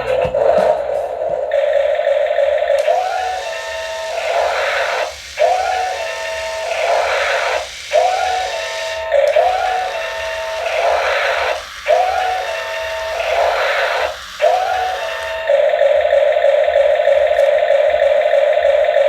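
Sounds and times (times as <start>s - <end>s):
electronic toy whine: 1.4s - 19.0s
electronic hiss: 2.8s - 15.4s.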